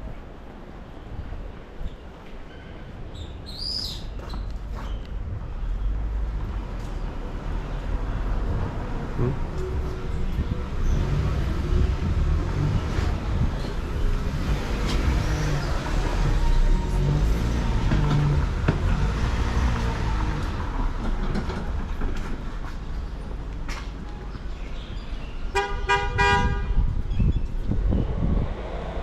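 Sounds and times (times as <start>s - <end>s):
street noise rumble: 0.0s - 29.0s
vehicle horn toots: 25.5s - 26.9s.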